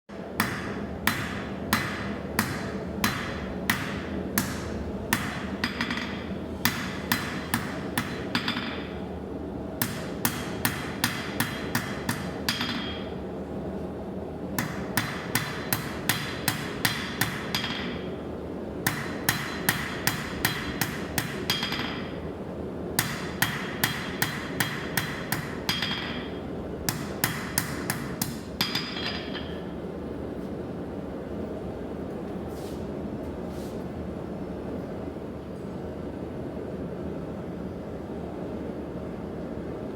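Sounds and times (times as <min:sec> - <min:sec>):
hammer striking metal on anvil: 0:00.4 - 0:09.0, 0:09.8 - 0:13.2, 0:14.6 - 0:18.1, 0:18.8 - 0:22.2, 0:23.0 - 0:29.6.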